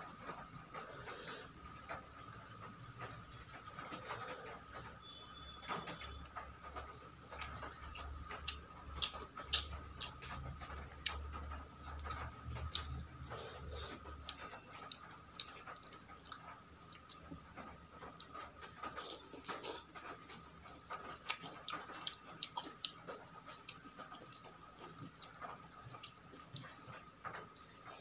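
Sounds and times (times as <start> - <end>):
chewing and mouth sounds: 6.7 - 28.0.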